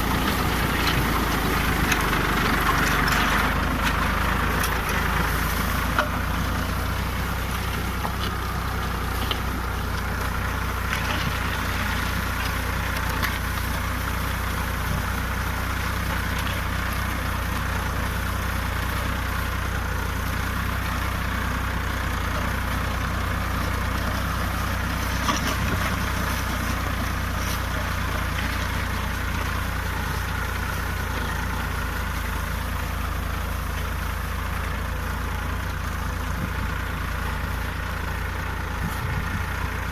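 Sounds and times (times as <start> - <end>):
tractor engine droning: 0.0 - 39.9.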